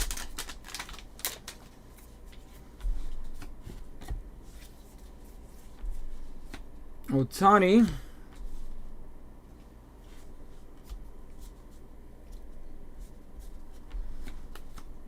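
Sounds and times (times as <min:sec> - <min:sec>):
trading cards being flipped: 0:00.0 - 0:05.8, 0:13.4 - 0:14.9.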